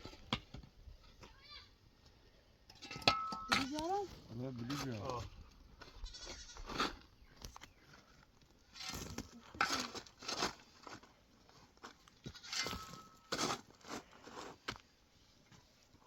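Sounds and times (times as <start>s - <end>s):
livestock bleating: 6.0s - 6.6s.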